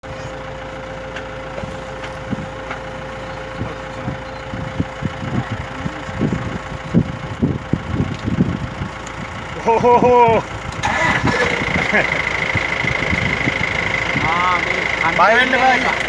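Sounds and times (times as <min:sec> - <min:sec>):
vehicle engine idling: 0:00.0 - 0:16.0
low rumbles and knocks: 0:01.1 - 0:09.5.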